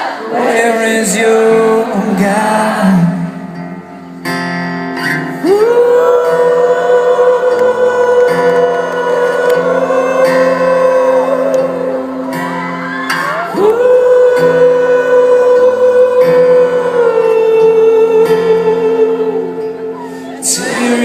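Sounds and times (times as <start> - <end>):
person singing long swooping notes: 5.3 - 21.0
rock band playing: 11.7 - 13.5.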